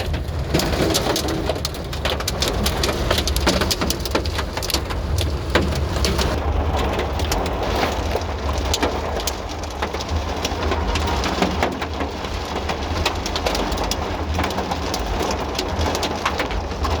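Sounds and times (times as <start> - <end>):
raindrops ticking close by: 0.0 - 17.0
steady rain falling: 0.0 - 17.0.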